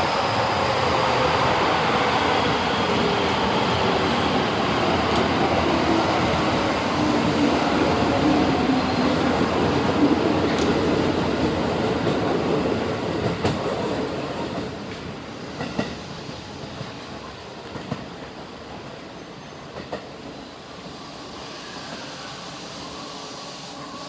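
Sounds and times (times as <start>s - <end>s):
electric train pulling away: 0.0s - 10.9s, 20.4s - 24.0s.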